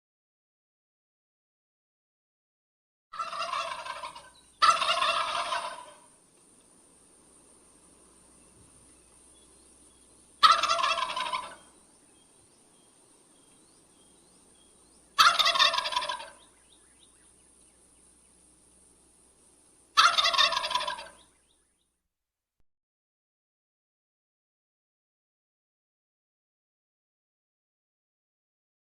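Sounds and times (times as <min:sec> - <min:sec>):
wild turkey gobbling: 0:03.1 - 0:06.2, 0:09.1 - 0:12.2, 0:13.4 - 0:17.5, 0:19.9 - 0:21.6.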